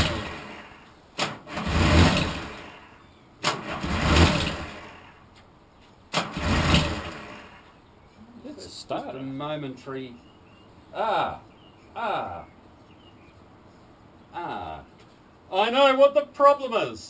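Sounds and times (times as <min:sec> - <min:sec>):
starter motor cranking engine: 0:00.0 - 0:05.2, 0:06.1 - 0:07.8.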